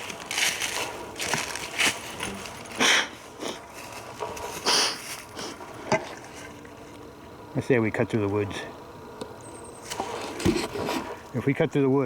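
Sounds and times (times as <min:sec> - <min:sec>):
footsteps in dry leaves: 0:00.0 - 0:05.5.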